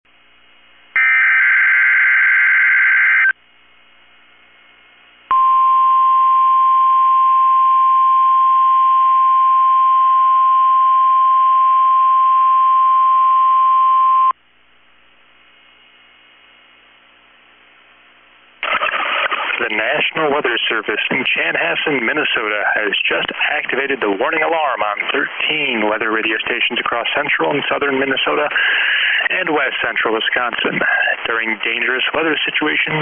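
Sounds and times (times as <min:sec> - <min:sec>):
steady alarm tone: 0:01.0 - 0:03.4
radio hiss: 0:18.6 - 0:33.0.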